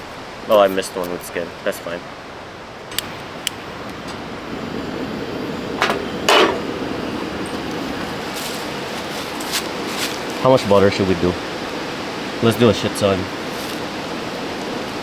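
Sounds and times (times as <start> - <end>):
rushing background noise: 0.0 - 15.0
cooking utensils knocking and clinking: 5.8 - 6.8.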